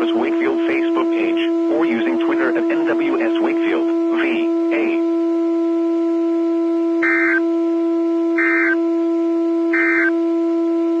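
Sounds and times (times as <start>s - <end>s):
low-pitched hum tone: 0.0s - 11.0s
warbling data bursts: 7.0s - 7.4s, 8.4s - 8.8s, 9.8s - 10.2s.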